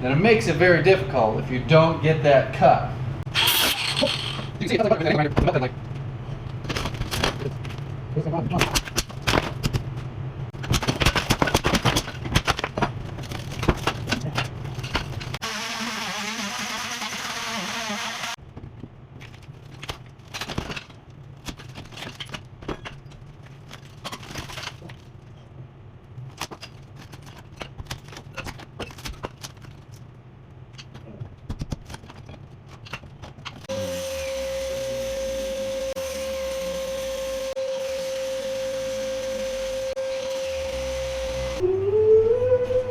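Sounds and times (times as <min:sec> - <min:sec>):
plaster cracking and crumbling: 0:10.6 - 0:15.4, 0:18.4 - 0:25.3, 0:26.2 - 0:30.1
low buzzing hum: 0:33.7 - 0:42.9.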